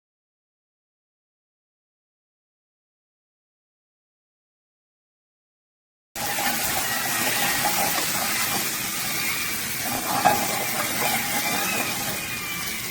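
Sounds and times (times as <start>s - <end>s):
tap water running: 6.2s - 12.9s.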